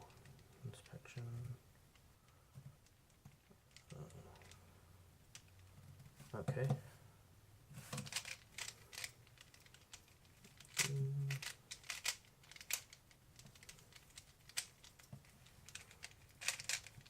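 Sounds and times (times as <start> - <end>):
puzzle cube clicking: 7.9 - 17.0.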